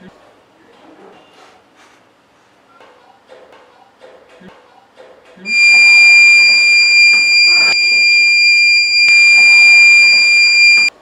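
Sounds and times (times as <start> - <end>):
high-pitched alarm buzzer: 5.5 - 11.0.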